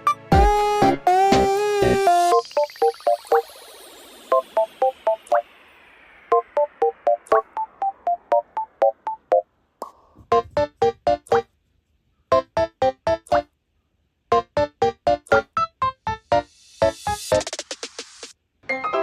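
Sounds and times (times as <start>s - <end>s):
plucky keyboard notes: 6.3s - 9.4s, 10.3s - 11.5s, 12.3s - 13.5s, 14.3s - 17.2s.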